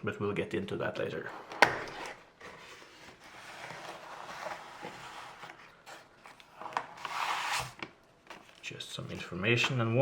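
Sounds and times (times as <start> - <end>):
paper packaging rustling: 1.6 - 9.4.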